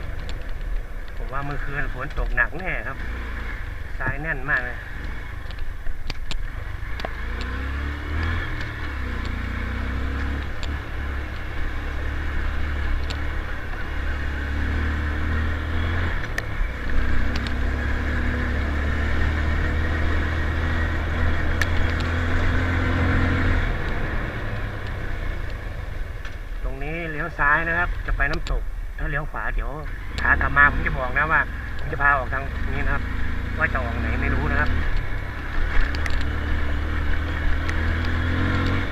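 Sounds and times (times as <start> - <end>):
continuous rushing noise: 0.0 - 38.9
motorcycle engine running: 0.0 - 38.9
sharp clicks: 5.0 - 7.6, 10.2 - 11.5, 16.1 - 17.6, 21.5 - 22.2, 27.8 - 28.6, 34.6 - 38.9.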